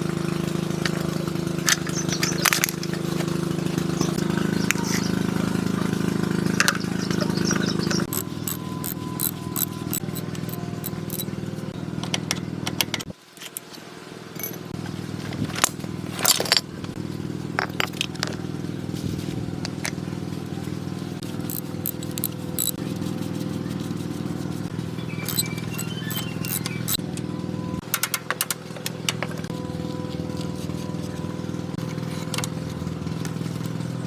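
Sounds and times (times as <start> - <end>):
metallic clicks and rattles: 8.1 - 11.3, 21.5 - 22.8, 25.3 - 27.0
motor running: 8.1 - 11.3, 21.4 - 22.8, 25.3 - 27.0.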